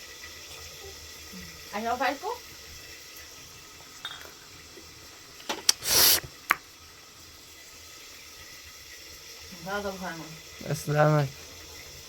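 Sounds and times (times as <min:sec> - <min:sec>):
glasses and dishes clinking: 0:04.0 - 0:04.4.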